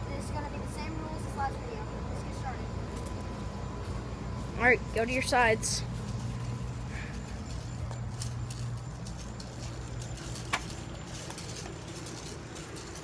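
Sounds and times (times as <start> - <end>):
low rumble of wind: 0.0 - 13.0
footsteps on ground: 2.8 - 13.0.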